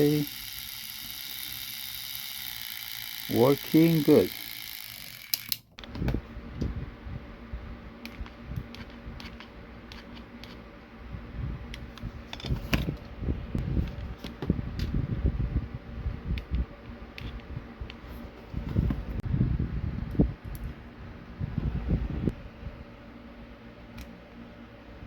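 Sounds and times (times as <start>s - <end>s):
fan-like hum: 0.0s - 25.0s
plastic toy parts clicking: 3.2s - 5.7s.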